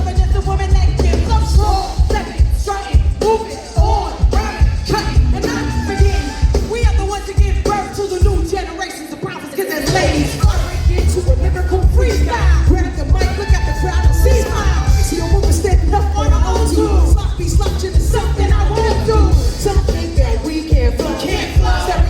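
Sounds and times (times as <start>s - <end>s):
heavy bass beat: 0.0s - 8.7s, 9.8s - 22.0s
live hip hop music: 0.0s - 22.0s
person singing: 0.0s - 22.0s.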